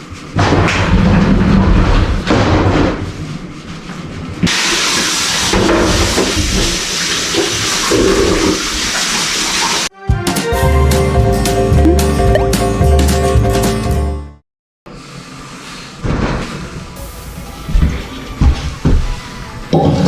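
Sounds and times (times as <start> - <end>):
music: 9.9 - 14.4.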